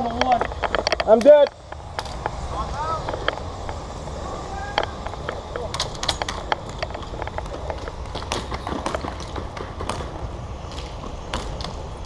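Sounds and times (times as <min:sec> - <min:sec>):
steady low rumble: 0:00.0 - 0:12.0
airsoft guns firing: 0:08.2 - 0:11.7.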